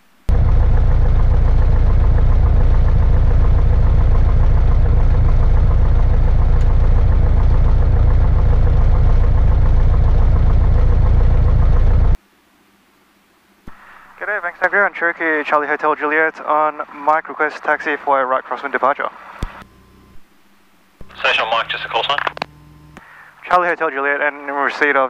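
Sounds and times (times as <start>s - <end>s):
aircraft engine running: 0.2s - 12.2s, 19.1s - 23.7s.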